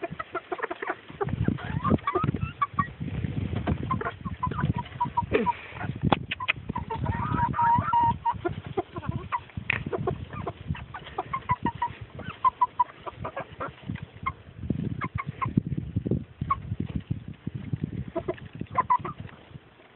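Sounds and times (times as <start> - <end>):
chickens clucking: 0.0 - 19.9.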